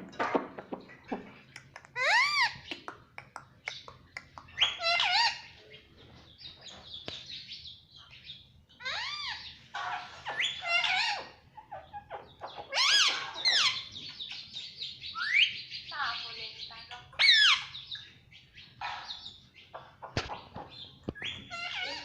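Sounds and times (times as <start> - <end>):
parrot calling: 1.9 - 2.8, 4.5 - 5.6, 8.8 - 20.1, 21.2 - 22.0.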